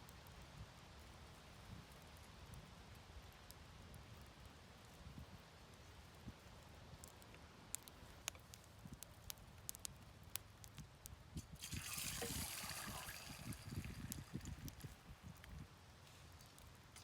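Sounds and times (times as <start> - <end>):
water pouring and gurgling: 11.4 - 15.1.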